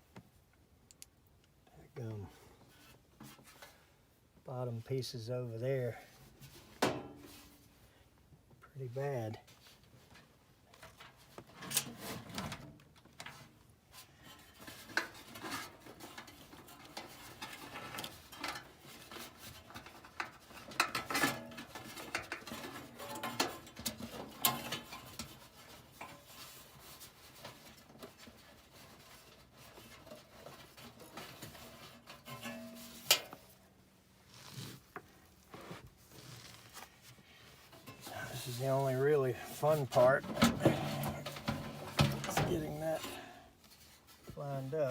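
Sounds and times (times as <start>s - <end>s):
metal clinks and scraping: 14.2s - 33.6s.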